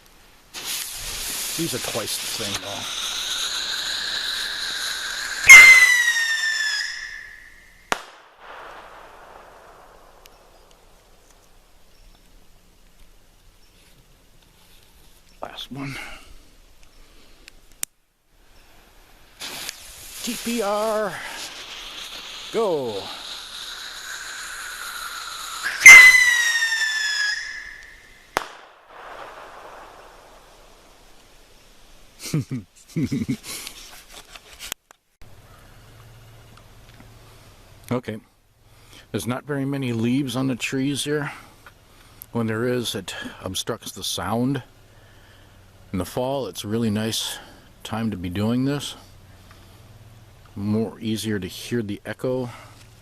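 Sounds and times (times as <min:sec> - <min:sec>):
bottle rocket whoosh and whistle: 0:02.4 - 0:07.6, 0:21.1 - 0:28.1
faint echo: 0:07.0 - 0:11.8, 0:27.6 - 0:31.4
firework bang: 0:07.9 - 0:10.9, 0:25.8 - 0:31.0.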